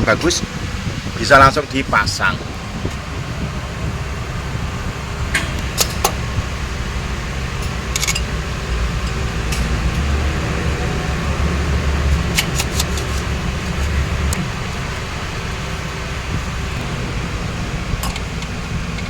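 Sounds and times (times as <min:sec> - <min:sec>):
fan humming: 0:00.0 - 0:19.0
metallic clicks and clinks: 0:07.6 - 0:09.8.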